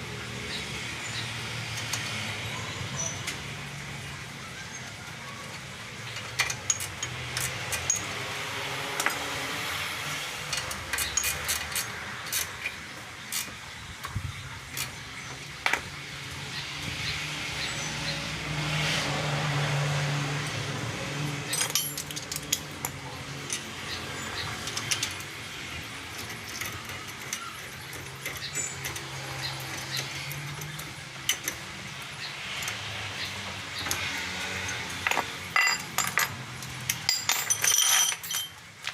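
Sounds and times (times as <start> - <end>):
metal tools clinking: 6.2 - 8.2, 10.5 - 13.6, 21.4 - 25.4, 26.0 - 32.0, 33.7 - 38.9.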